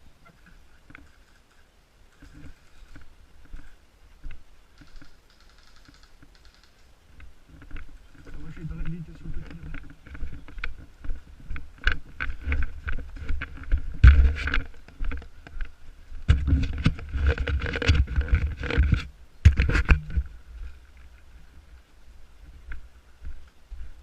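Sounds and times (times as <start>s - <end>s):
knocks and scrapes: 0.3s - 3.8s, 7.5s - 21.2s
footsteps through undergrowth: 0.3s - 24.0s.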